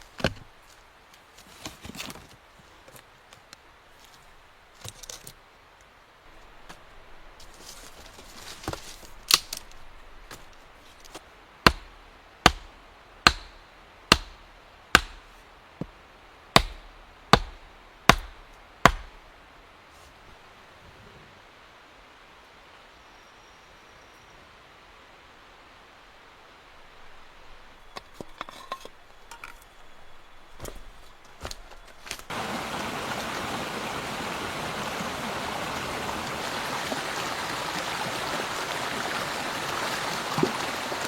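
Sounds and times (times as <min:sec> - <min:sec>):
soft rustling: 0:00.0 - 0:05.4, 0:06.3 - 0:11.3, 0:27.0 - 0:32.3
axe chopping wood: 0:11.1 - 0:16.0, 0:16.6 - 0:19.3, 0:40.4 - 0:40.6.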